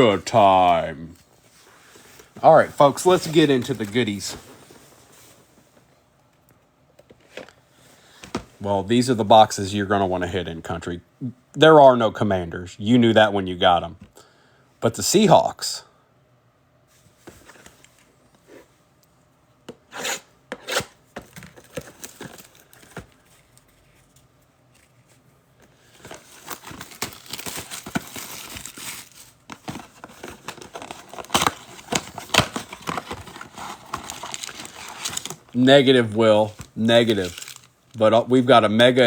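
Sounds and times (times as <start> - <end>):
card packs crinkling and tearing: 0.0 - 0.8, 2.2 - 4.4, 20.6 - 38.3.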